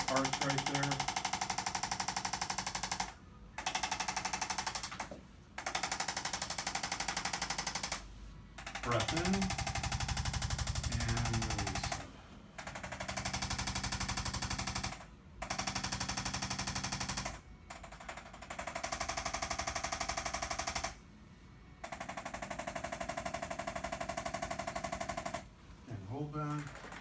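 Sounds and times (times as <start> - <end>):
percussion massager pulsing: 0.0 - 19.1.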